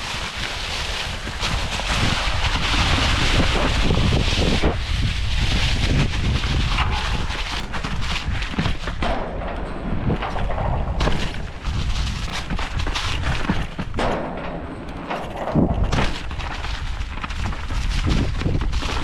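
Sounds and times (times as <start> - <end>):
bike tyre and frame rattle: 0.0 - 19.0
wind rumble on microphone: 0.0 - 19.0
sharp knocks and thumps: 5.9 - 19.0.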